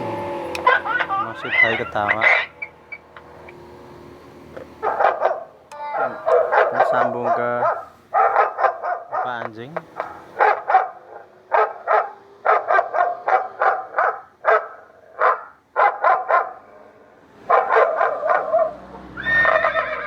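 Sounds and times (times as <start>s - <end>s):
electronic dog barking effect: 4.8s - 16.7s
electronic horse whinny effect: 19.2s - 20.0s.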